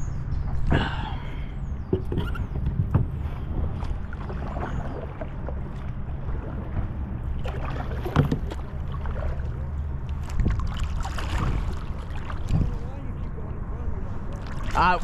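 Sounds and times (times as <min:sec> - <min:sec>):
steady low rumble: 0:00.0 - 0:15.0
paddle splashing water: 0:01.9 - 0:13.0, 0:14.2 - 0:15.0.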